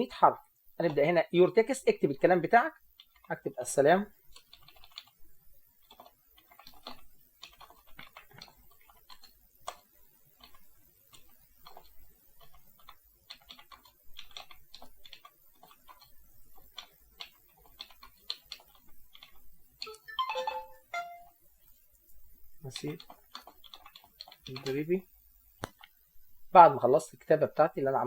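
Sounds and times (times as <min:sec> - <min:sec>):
computer keyboard typing: 0:03.0 - 0:03.3, 0:04.3 - 0:05.2, 0:05.8 - 0:21.3, 0:22.7 - 0:25.0.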